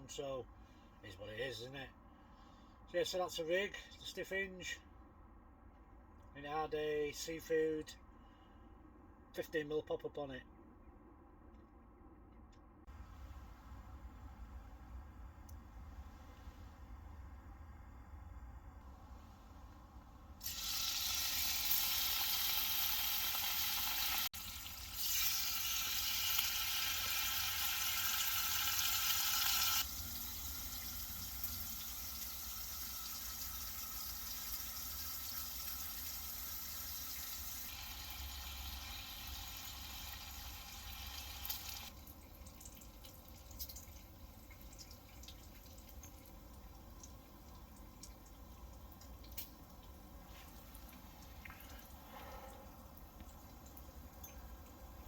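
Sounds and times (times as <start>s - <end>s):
food sizzling in a frying pan: 20.4s - 41.9s.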